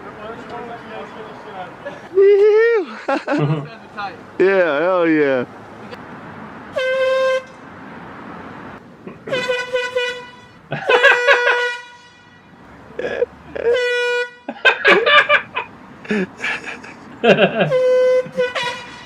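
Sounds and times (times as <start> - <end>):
voices: 0.0 - 5.6
air horn blasts: 6.7 - 7.6, 9.3 - 12.6, 13.7 - 14.5, 17.6 - 19.0.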